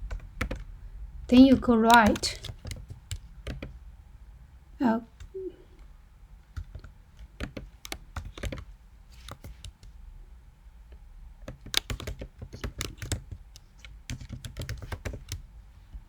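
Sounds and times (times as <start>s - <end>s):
typing on computer keyboard: 0.0s - 0.7s, 1.3s - 3.8s, 6.5s - 10.0s, 11.4s - 15.5s.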